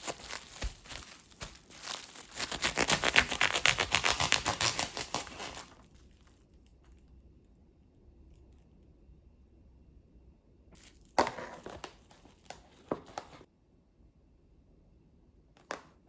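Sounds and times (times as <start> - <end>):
packaging crinkling: 0.0 - 6.6, 10.8 - 13.5.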